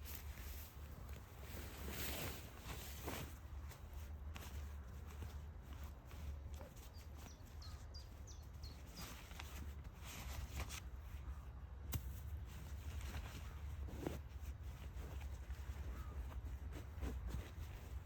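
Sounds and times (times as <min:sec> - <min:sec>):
small bird chirping: 0:06.8 - 0:09.3.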